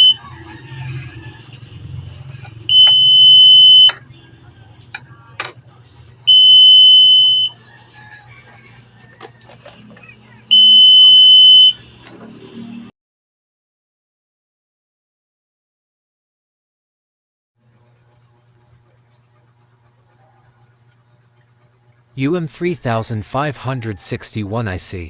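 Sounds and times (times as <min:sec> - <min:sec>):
high-pitched alarm buzzer beep: 0:00.0 - 0:00.2, 0:02.7 - 0:04.0, 0:06.3 - 0:07.6, 0:10.5 - 0:11.8.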